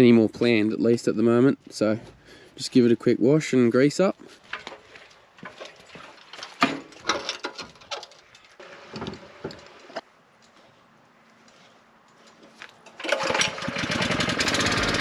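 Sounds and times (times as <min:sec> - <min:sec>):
equipment clicks and knocks: 0:14.4 - 0:15.0.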